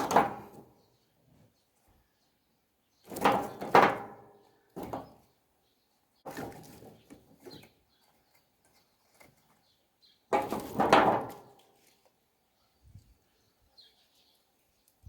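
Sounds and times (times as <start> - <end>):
axe splitting firewood: 0.0 - 0.8, 3.1 - 5.2, 6.2 - 7.8, 10.3 - 11.8
wood cracking: 10.3 - 12.2.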